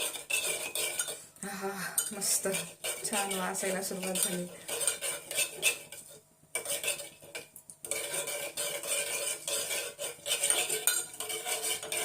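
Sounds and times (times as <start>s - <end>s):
spoon stirring and scraping in a pot: 0.0s - 12.0s
spoon clinking against pot: 10.3s - 12.0s.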